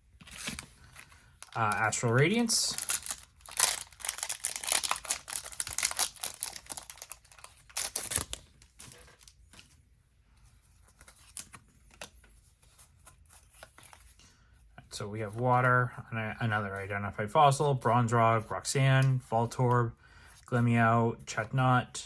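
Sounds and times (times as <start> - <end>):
foil wrapper tearing and crinkling: 0.3 - 9.4.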